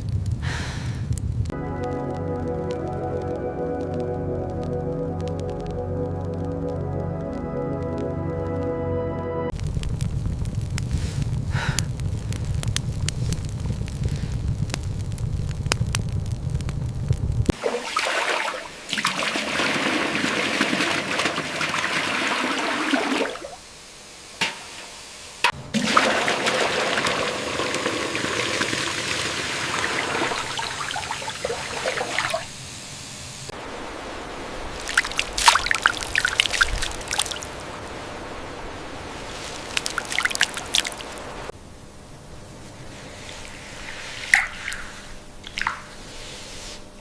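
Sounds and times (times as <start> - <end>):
crackling: 0.0 - 8.8, 9.5 - 17.6, 27.6 - 46.4
water trickling and pouring: 17.5 - 23.6, 25.8 - 32.5, 34.7 - 37.9, 39.6 - 41.4.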